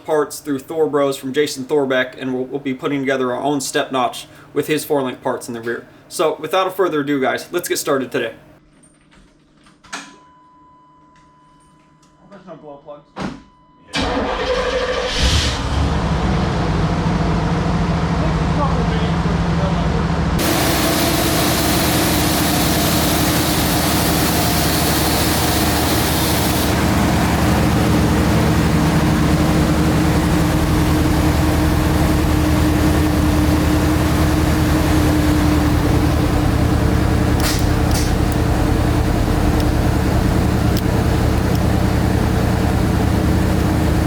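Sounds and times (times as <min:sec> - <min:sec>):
diesel pickup engine running: 0:14.0 - 0:44.0.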